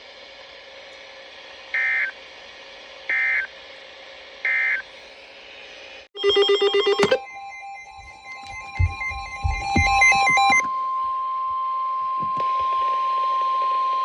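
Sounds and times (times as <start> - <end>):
rhythmic electronic music: 6.2 - 10.7.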